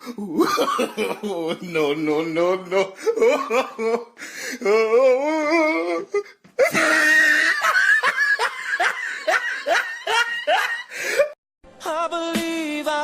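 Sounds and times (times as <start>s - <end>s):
person laughing loudly: 0.0s - 4.2s, 5.2s - 11.4s.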